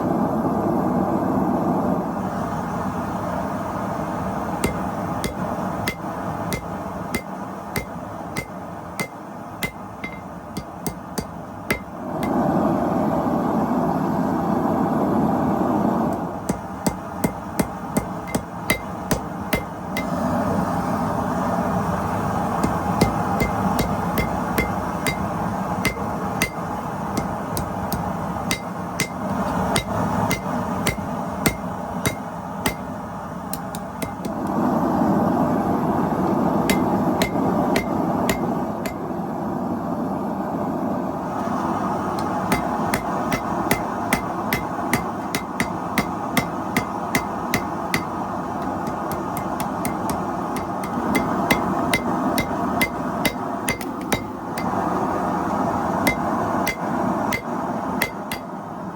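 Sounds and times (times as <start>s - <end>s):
constant rushing noise: 0.0s - 58.9s
hammer blows on anvil: 4.6s - 12.4s, 16.1s - 20.3s, 22.4s - 34.5s, 36.6s - 39.1s, 42.2s - 54.9s, 55.5s - 58.6s.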